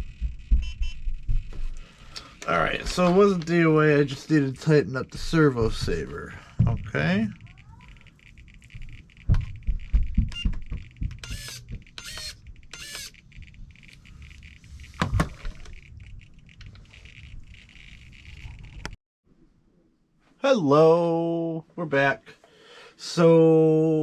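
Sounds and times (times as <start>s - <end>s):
servo whirring: 7.1s - 19.0s.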